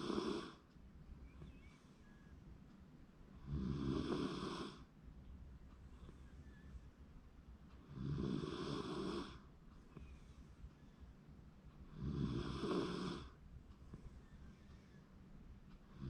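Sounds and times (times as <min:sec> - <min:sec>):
dog snoring: 0:00.0 - 0:00.6, 0:03.4 - 0:04.8, 0:07.8 - 0:09.4, 0:11.9 - 0:13.4.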